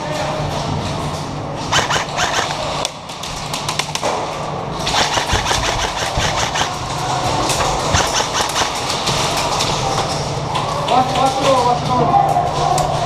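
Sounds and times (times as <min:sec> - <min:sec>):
steady low hum: 0:00.0 - 0:10.6
airsoft guns firing bursts: 0:01.7 - 0:02.8, 0:04.8 - 0:09.5.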